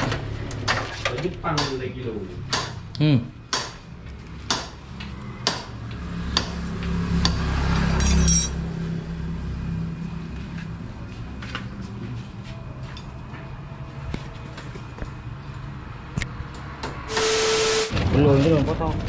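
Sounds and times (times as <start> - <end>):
metal tools clinking: 8.0 - 8.6.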